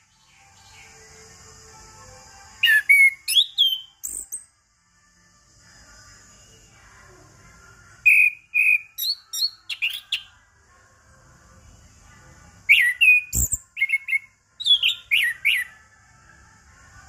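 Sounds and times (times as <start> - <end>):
bird singing whistled notes: 2.5 - 4.5, 8.0 - 10.3, 12.7 - 15.8.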